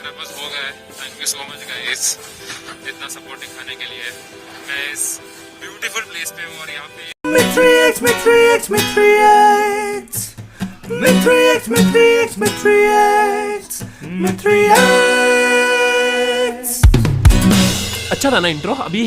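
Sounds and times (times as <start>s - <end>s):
acoustic guitar strumming chords: 7.3s - 18.2s.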